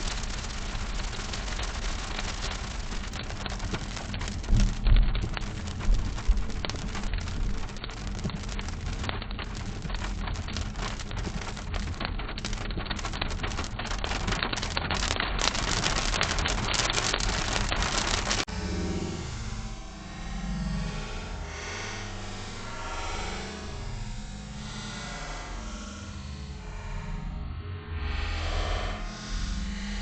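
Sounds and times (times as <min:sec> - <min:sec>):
rain drumming on a car: 0:00.0 - 0:18.5
car low rumble: 0:00.0 - 0:21.2.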